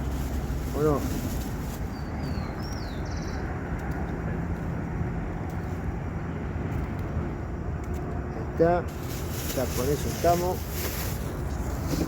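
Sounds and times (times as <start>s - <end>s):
low outdoor rumble: 0.0s - 12.0s
bird chirping: 1.8s - 3.6s.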